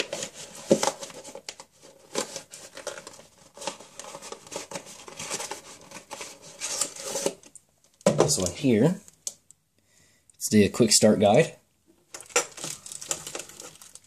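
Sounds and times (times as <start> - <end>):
paper and packaging rustling: 0.0 - 8.5, 12.1 - 14.0.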